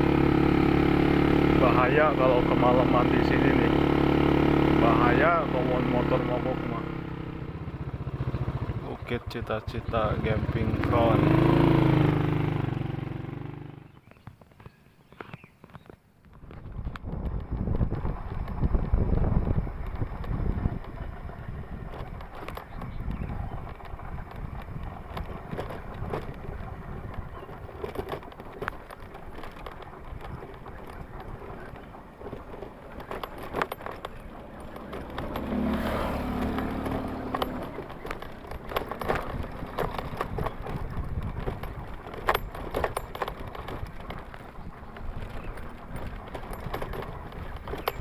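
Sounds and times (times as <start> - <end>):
engine hum: 0.0 - 48.0
motorbike low rumble: 0.0 - 48.0
rattles and knocks: 16.2 - 48.0.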